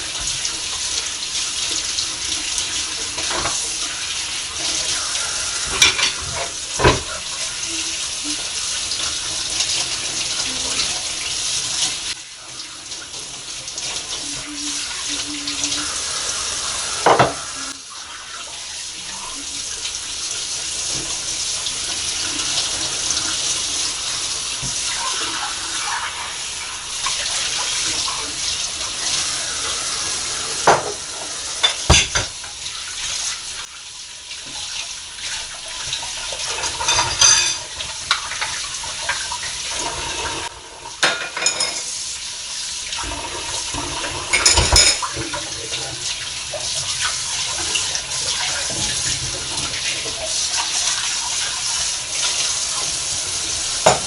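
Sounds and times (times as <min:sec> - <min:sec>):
tap running into sink: 0:03.0 - 0:03.7, 0:05.6 - 0:07.3, 0:16.9 - 0:17.7, 0:24.5 - 0:25.1, 0:30.5 - 0:32.6, 0:42.9 - 0:45.5
dishes and cutlery clinking: 0:05.7 - 0:07.1, 0:17.0 - 0:17.4, 0:31.6 - 0:32.4, 0:36.5 - 0:39.2, 0:41.0 - 0:42.0, 0:44.3 - 0:45.3.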